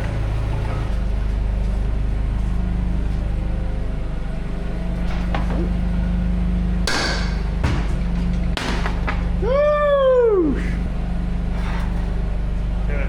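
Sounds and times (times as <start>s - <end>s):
forklift engine running: 0.0s - 13.0s
sharp knock: 6.9s - 8.0s.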